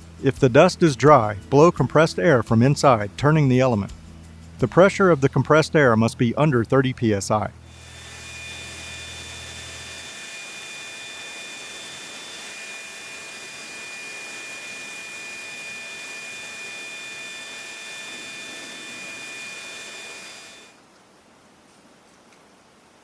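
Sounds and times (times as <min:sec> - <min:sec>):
compressed air hissing and whistling: 0:07.6 - 0:20.7.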